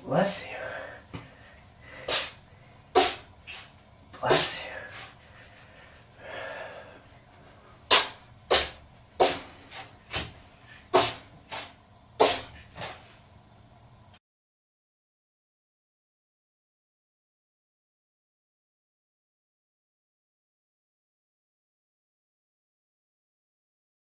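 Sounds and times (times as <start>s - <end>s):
cat sneezing: 2.0s - 5.1s, 7.8s - 9.9s, 10.9s - 13.1s.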